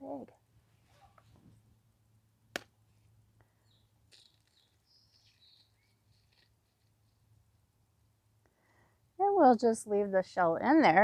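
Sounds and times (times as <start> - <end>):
faint bird chirps: 3.5 - 7.2.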